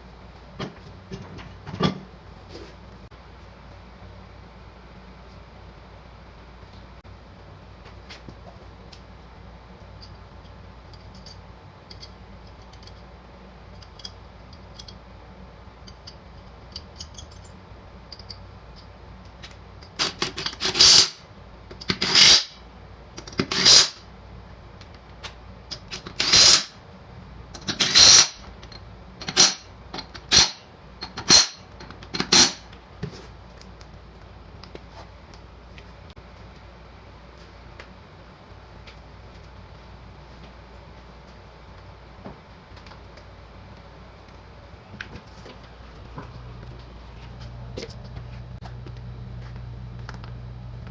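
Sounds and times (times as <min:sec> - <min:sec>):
impact wrench rattling bursts: 0:27.7 - 0:28.4.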